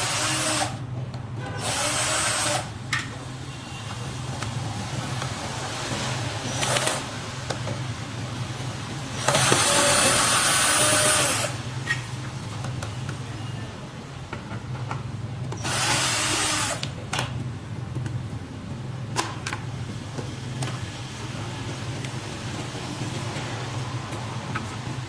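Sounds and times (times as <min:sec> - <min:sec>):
electric screwdriver whirring: 0:00.0 - 0:00.8, 0:01.6 - 0:02.7, 0:09.2 - 0:11.6, 0:15.6 - 0:16.9.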